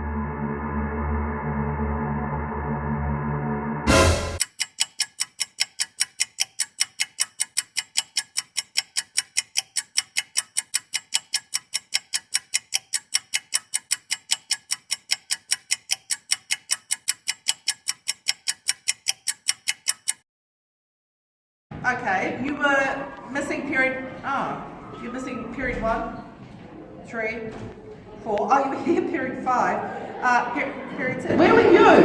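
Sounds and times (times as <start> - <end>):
rapid clock ticking: 3.9 - 20.2.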